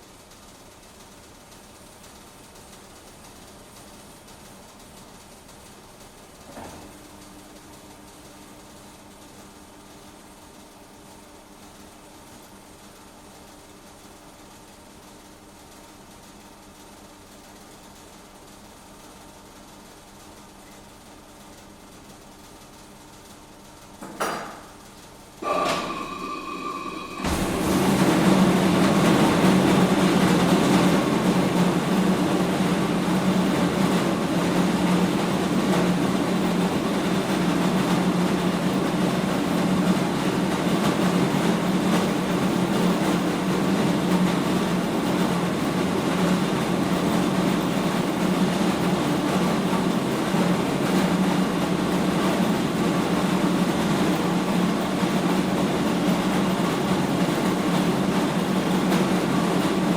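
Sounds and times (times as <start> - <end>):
low hum: 25.4 - 32.2
mill machinery rumbling: 25.4 - 59.9.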